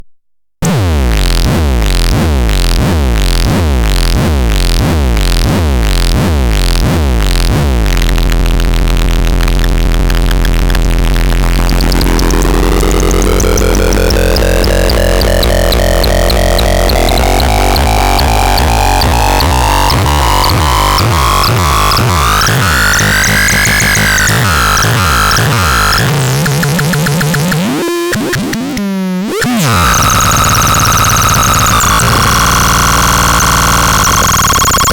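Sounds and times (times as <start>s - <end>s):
synthesizer low drone: 0.6s - 28.6s, 29.2s - 34.9s
synthesizer pulsing beats: 0.6s - 34.9s
synthesizer gliding tone: 9.8s - 34.9s.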